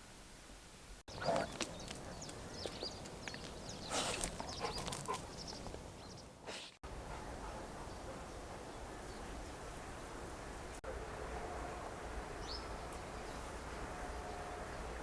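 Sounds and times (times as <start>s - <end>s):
birds chirping: 1.1s - 10.8s.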